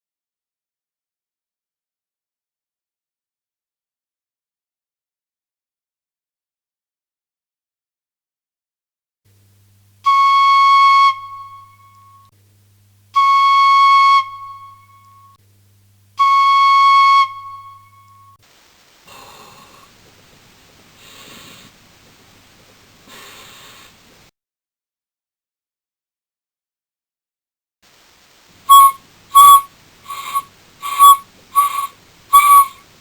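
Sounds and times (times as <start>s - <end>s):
fife playing notes: 10.0s - 12.2s, 13.1s - 15.4s, 16.1s - 18.4s, 28.7s - 32.9s
breathy blows into fife: 28.7s - 32.8s.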